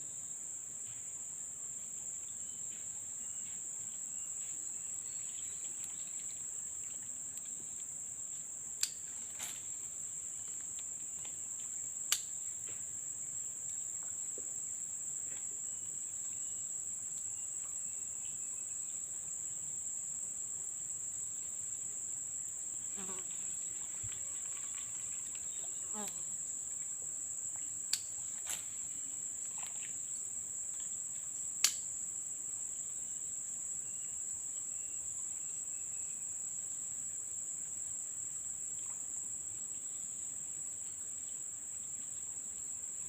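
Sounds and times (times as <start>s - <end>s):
shrill insect chorus: 2.2s - 8.2s, 20.9s - 43.0s.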